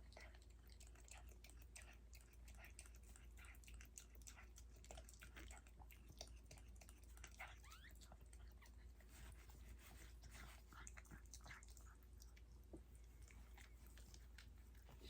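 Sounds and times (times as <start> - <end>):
dog licking and smacking: 0.0 - 15.0
puppy squeak: 7.6 - 8.0.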